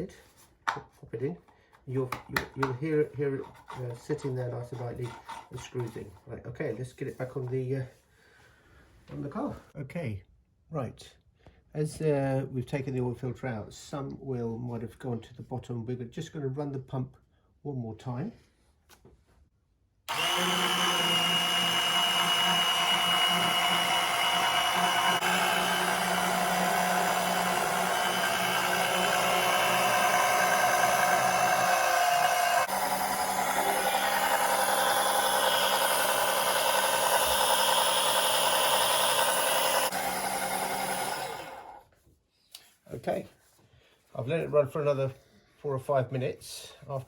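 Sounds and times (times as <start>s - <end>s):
oil pump whining: 20.1s - 41.8s.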